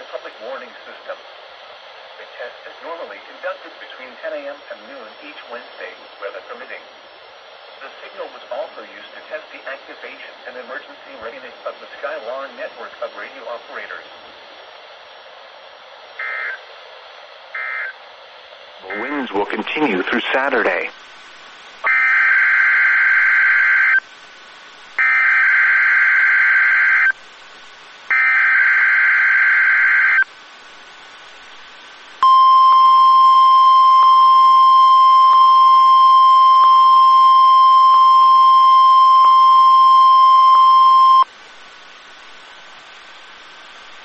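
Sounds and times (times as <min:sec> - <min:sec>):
steady warning alarm tone: 0:17.6 - 0:18.0, 0:18.8 - 0:19.9, 0:21.9 - 0:24.0, 0:25.0 - 0:27.1, 0:28.1 - 0:30.2, 0:32.2 - 0:41.3.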